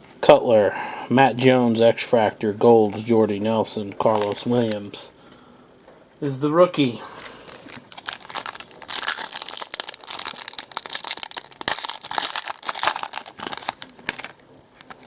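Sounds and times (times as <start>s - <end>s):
plastic wrapper crinkling and tearing: 4.0s - 5.0s, 7.2s - 15.0s.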